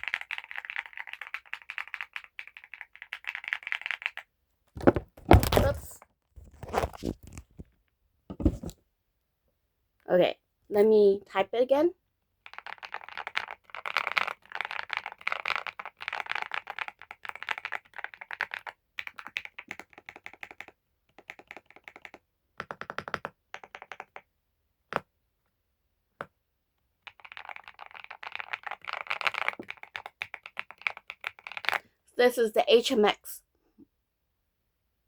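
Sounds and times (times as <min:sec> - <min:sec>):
mechanical keyboard typing: 0:12.5 - 0:24.2.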